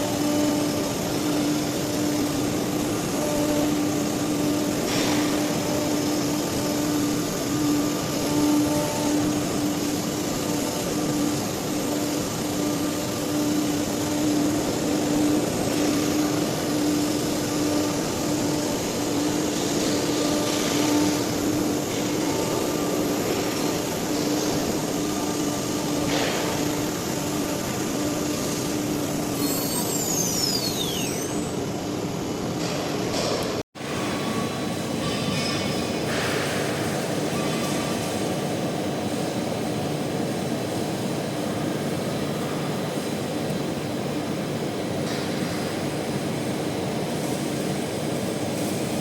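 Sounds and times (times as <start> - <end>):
steady hum tone: 0.0 - 33.2
machine running: 0.0 - 35.2.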